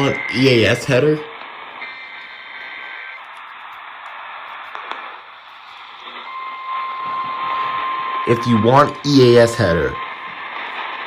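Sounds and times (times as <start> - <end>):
steady high tone: 0.0 - 1.3, 6.0 - 10.6
radio static hiss: 0.0 - 11.0.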